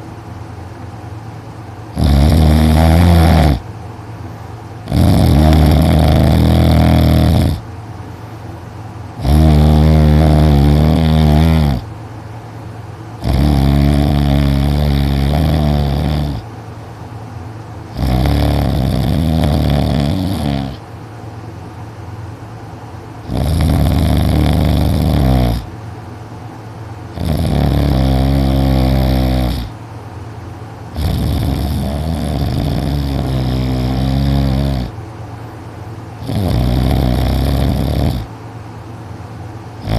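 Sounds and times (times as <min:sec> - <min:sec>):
loud heavy snoring: 0:01.9 - 0:03.7, 0:04.8 - 0:07.7, 0:09.2 - 0:11.9, 0:13.2 - 0:16.5, 0:17.9 - 0:20.8, 0:23.2 - 0:25.7, 0:27.2 - 0:29.8, 0:31.0 - 0:35.0, 0:36.2 - 0:38.3.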